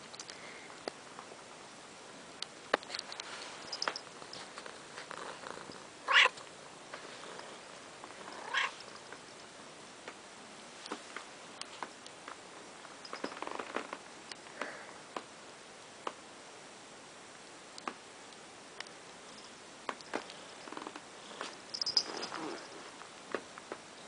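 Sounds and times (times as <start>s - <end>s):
kitten mewing: 6.1s - 6.4s, 8.4s - 8.8s.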